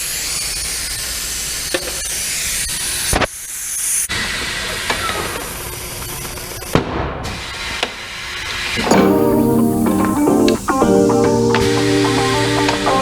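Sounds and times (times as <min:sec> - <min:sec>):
air hissing from tire valve: 0:08.9 - 0:12.5.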